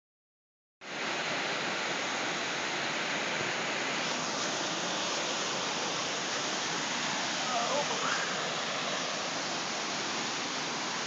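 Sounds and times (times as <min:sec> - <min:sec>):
waterfall rushing: 0:00.9 - 0:11.0.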